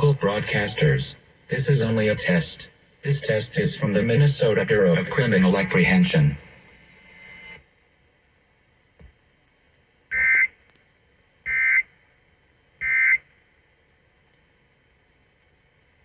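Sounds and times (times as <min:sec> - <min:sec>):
screechy digital data tones: 0:00.0 - 0:07.6.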